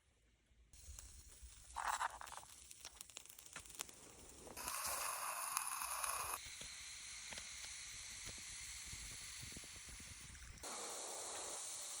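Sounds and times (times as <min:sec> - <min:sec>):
faint crackles: 0:00.8 - 0:11.6
camp stove flame hissing: 0:00.8 - 0:12.0.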